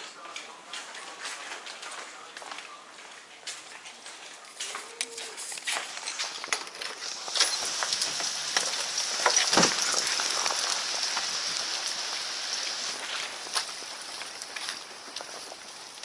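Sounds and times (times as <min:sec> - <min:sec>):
heavy rain on hard surface: 0:06.2 - 0:16.0.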